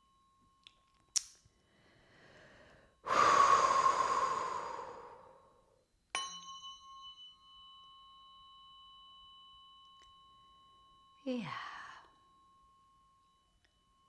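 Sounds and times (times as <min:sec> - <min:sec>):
person breathing in: 0:01.7 - 0:05.7
person sighing exhale: 0:03.1 - 0:05.6
tuning fork ringing: 0:06.1 - 0:14.0.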